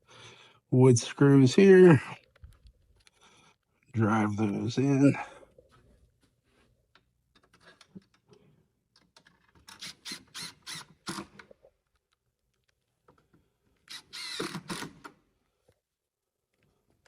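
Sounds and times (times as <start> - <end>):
cordless driver driving screws: 9.6 - 11.5, 13.8 - 15.2.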